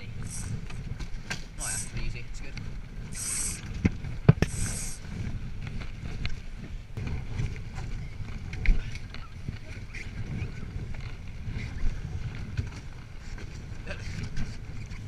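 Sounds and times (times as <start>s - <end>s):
wind rumbling on microphone: 0.0s - 15.0s
brief hiss: 4.4s - 5.0s.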